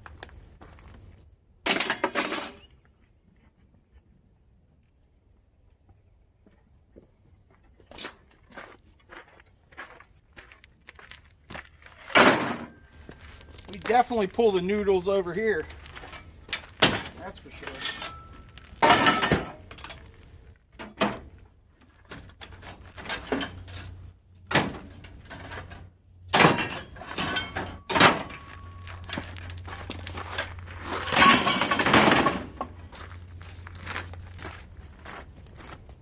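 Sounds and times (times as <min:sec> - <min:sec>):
scrap metal knocks and clunks: 0:01.7 - 0:02.7, 0:12.0 - 0:14.5, 0:15.6 - 0:33.1
scrap clattering rattle: 0:15.8 - 0:20.1, 0:22.0 - 0:33.0.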